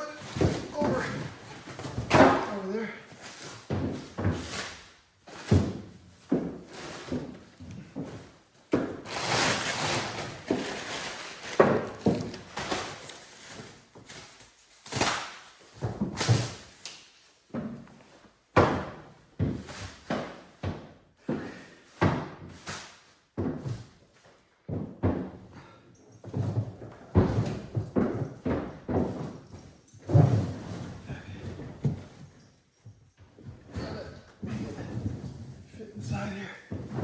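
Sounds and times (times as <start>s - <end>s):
rubber mat scraping: 9.0s - 12.4s.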